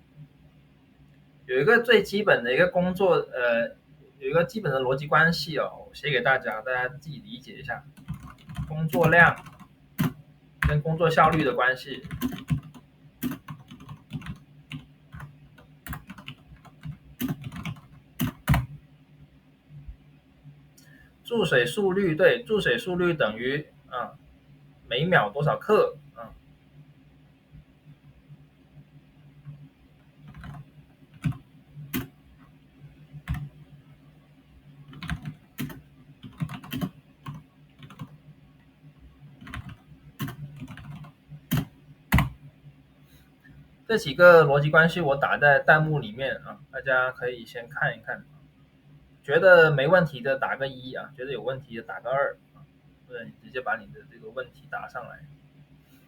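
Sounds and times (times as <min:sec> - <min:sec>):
faint low hum: 0:00.0 - 0:56.0
computer keyboard typing: 0:08.0 - 0:18.8, 0:30.2 - 0:32.6, 0:33.2 - 0:33.6, 0:34.9 - 0:38.2, 0:39.4 - 0:42.4.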